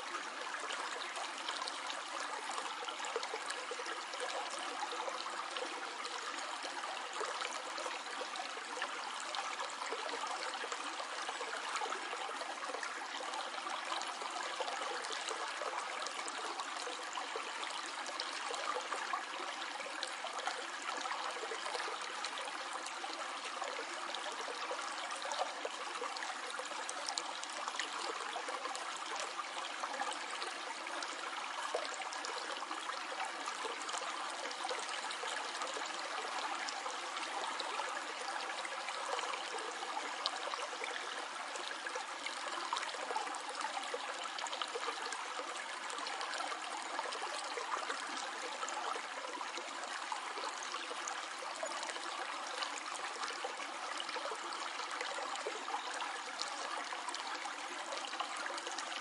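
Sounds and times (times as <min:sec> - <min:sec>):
stream trickling over stones: 0:00.0 - 0:59.0.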